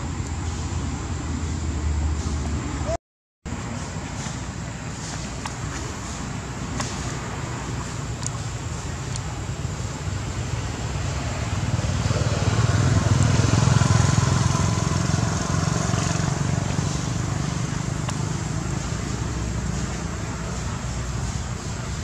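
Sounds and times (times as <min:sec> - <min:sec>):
vehicle engine passing by: 0:10.2 - 0:21.4.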